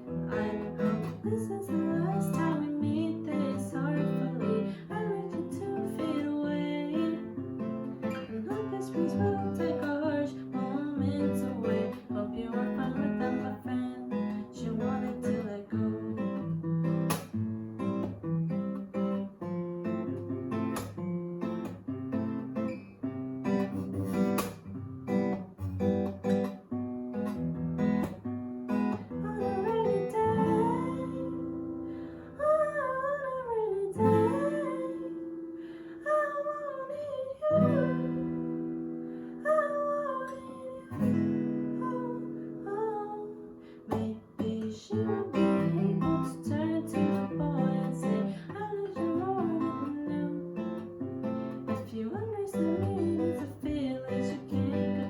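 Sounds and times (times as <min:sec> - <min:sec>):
person singing: 0:00.0 - 0:07.4, 0:08.2 - 0:16.4, 0:29.1 - 0:31.6, 0:32.3 - 0:35.4, 0:36.0 - 0:38.4, 0:39.4 - 0:50.6, 0:51.7 - 0:55.0
acoustic guitar strummed and picked: 0:00.0 - 0:55.0.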